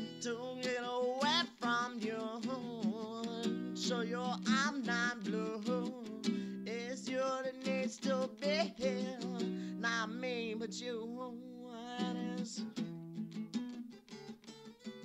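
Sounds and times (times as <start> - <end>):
wordless singing: 0.0 - 12.7
strummed guitar: 0.0 - 15.0.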